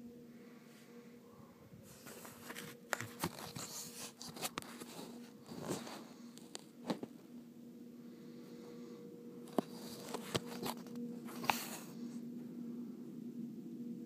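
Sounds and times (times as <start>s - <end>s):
faint steady hum: 0.0s - 14.0s
crackling rustling noises: 1.8s - 7.4s, 9.5s - 12.3s.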